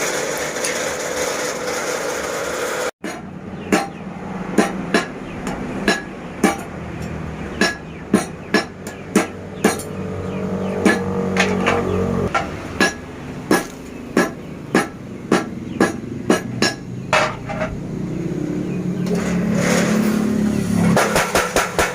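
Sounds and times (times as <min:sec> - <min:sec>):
steady mechanical noise: 0:00.0 - 0:21.9
hammer striking hot metal: 0:03.0 - 0:09.9, 0:12.3 - 0:17.7, 0:20.9 - 0:21.9.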